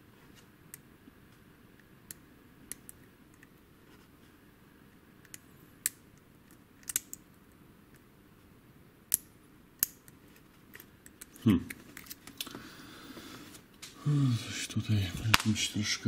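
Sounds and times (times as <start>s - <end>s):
lock pick metallic clicks: 6.8s - 7.2s.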